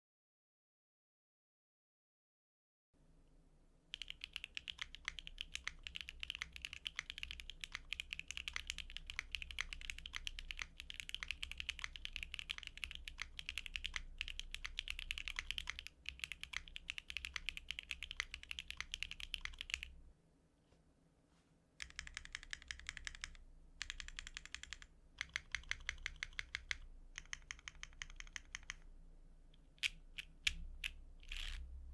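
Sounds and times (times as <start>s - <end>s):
mechanical keyboard typing: 4.0s - 20.0s, 21.8s - 28.8s.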